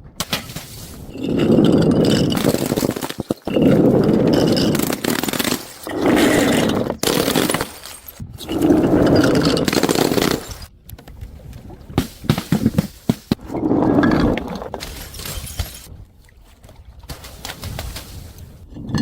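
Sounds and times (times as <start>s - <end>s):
rough crunching and scraping: 0.4s - 10.7s.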